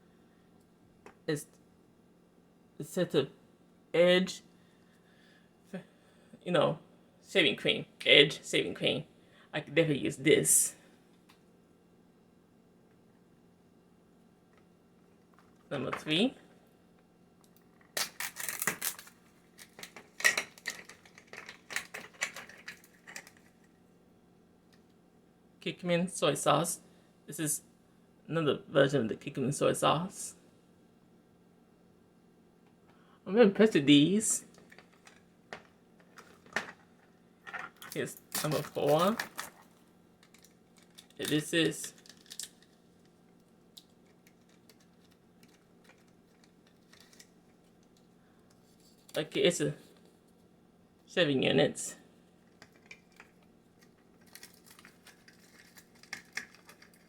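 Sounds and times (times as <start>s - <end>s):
small plastic pieces clicking: 17.5s - 23.5s, 41.9s - 42.8s, 52.6s - 57.0s
wrapper crinkling: 17.8s - 23.7s, 37.6s - 43.2s, 43.8s - 47.9s, 52.4s - 57.0s.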